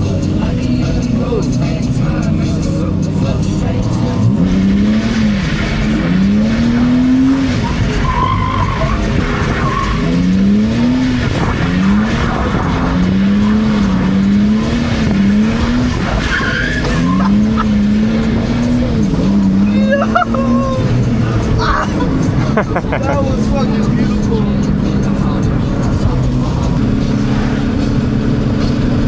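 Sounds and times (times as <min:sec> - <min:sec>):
car engine revving: 0:00.0 - 0:29.0
tyre squeals: 0:01.3 - 0:24.1.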